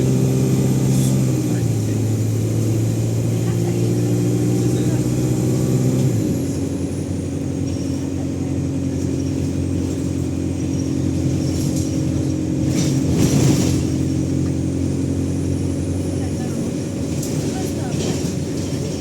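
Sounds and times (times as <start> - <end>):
bus engine running: 0.0 - 19.0.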